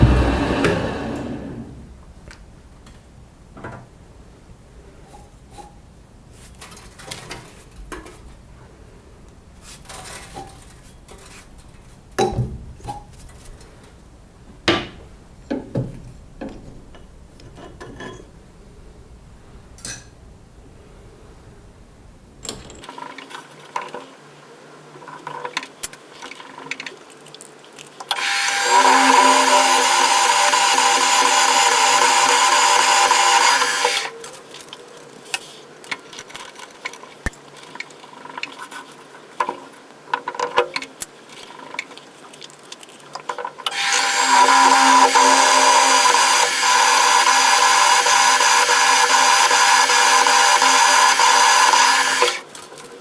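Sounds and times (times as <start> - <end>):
power tool humming: 0.0 - 1.8, 28.1 - 34.2, 43.7 - 52.4
knocks and clinks of metal parts: 19.8 - 20.2, 22.4 - 22.9.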